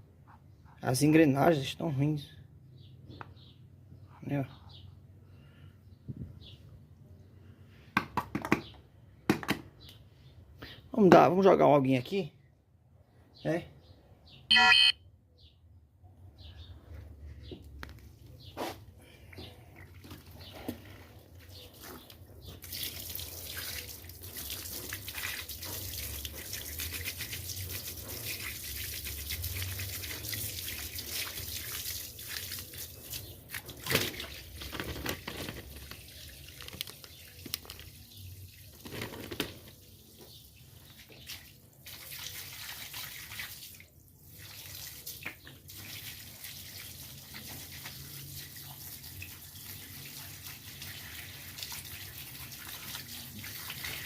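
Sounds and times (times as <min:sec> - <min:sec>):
running water splashing: 0:22.6 - 0:39.1, 0:40.8 - 0:54.0.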